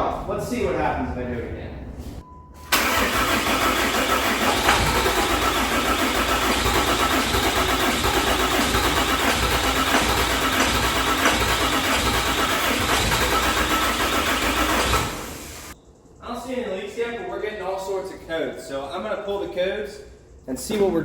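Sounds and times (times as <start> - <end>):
starter cranking diesel engine: 2.7 - 15.8.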